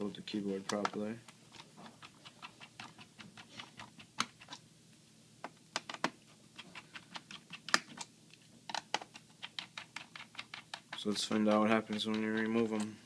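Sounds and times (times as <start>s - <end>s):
screwdriver clicking on plastic: 8.7s - 12.9s.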